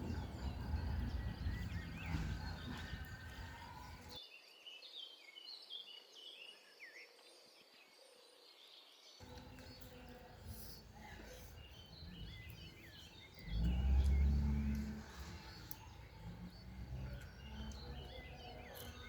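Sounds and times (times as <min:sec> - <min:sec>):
low rumble: 0:00.0 - 0:04.2, 0:09.2 - 0:19.0.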